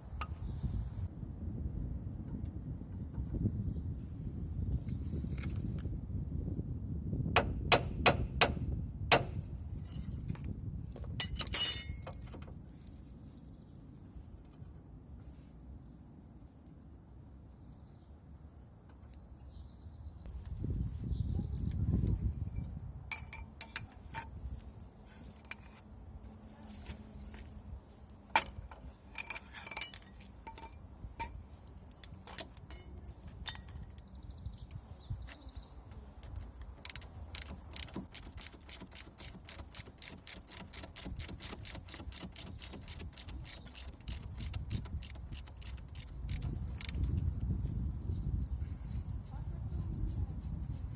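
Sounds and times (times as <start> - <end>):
metal tool clattering: 11.2 - 12.4, 22.5 - 24.4, 25.1 - 25.8, 28.3 - 34.0.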